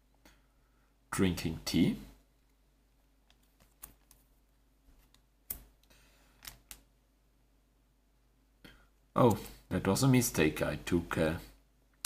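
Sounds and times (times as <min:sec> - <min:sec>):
cards clicking and rustling: 0:03.2 - 0:06.9.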